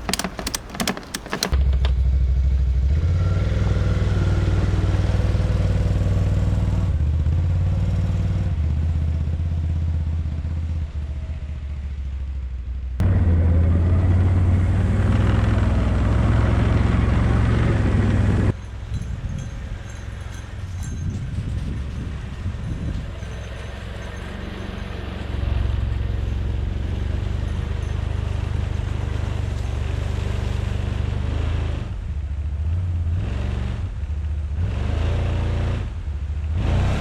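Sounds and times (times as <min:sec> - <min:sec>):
atv engine running under load: 0:00.0 - 0:01.6.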